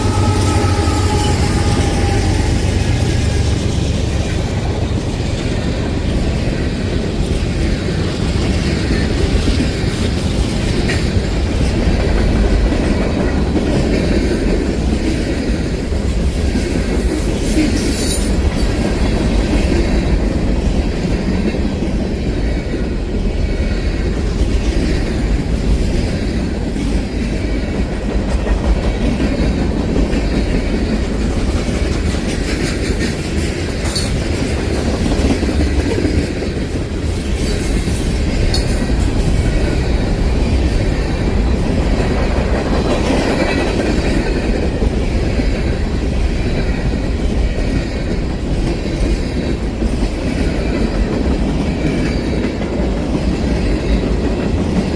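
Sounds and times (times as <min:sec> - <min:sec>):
high wheel squeal: 0:00.0 - 0:03.6
freight train wheels clattering: 0:00.0 - 0:54.9.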